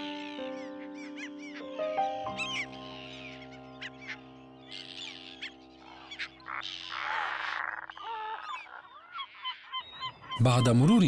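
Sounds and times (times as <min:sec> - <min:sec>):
background music chord: 0:00.0 - 0:06.8
seabirds calling: 0:00.0 - 0:11.0.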